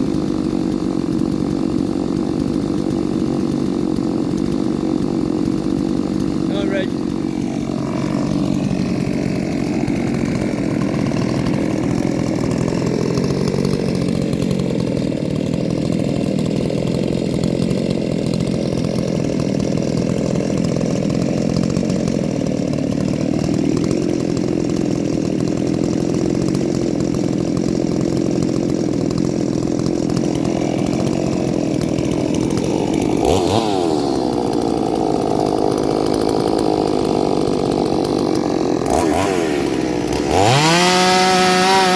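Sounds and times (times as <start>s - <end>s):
chainsaw cutting wood: 0.0s - 41.9s.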